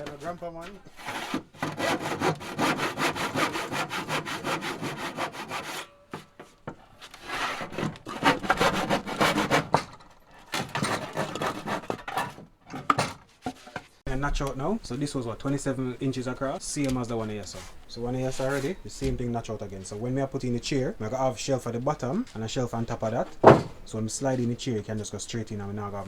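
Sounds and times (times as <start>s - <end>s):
handsaw cutting wood: 0.9s - 6.3s, 7.0s - 9.9s, 10.5s - 12.3s.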